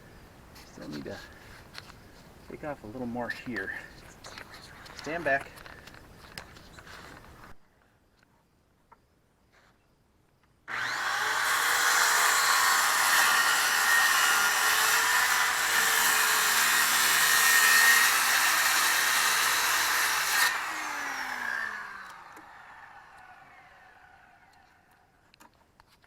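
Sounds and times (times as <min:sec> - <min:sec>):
power tool cutting sheet metal: 0:10.7 - 0:24.4
tool spinning down whine: 0:10.7 - 0:24.8.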